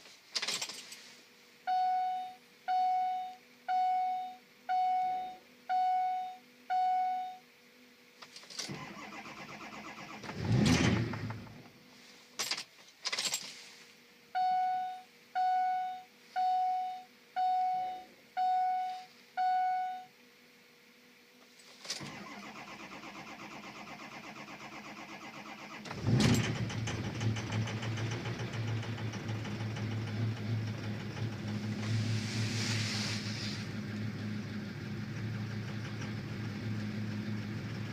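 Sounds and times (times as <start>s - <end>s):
dashboard warning chimes: 1.7s - 7.4s, 14.4s - 20.1s
starter motor cranking: 8.6s - 11.6s, 22.0s - 32.1s
diesel engine running: 8.7s - 12.2s, 22.0s - 37.9s.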